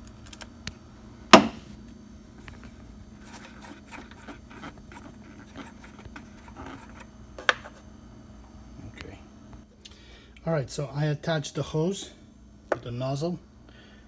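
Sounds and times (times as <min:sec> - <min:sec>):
faint steady hum: 0:00.0 - 0:14.0
sharp knock: 0:01.4 - 0:01.6
light rubbing and scraping: 0:02.4 - 0:07.8.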